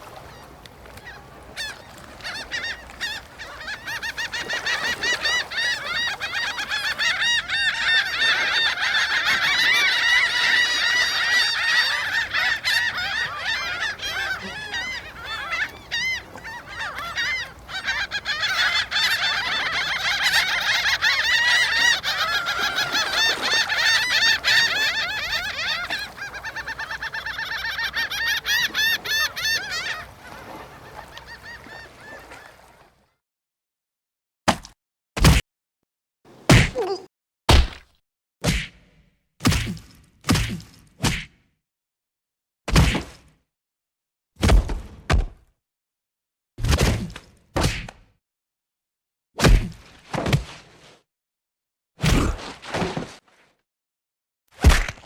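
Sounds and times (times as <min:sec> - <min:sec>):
chorus of birds calling: 0:00.1 - 0:32.8.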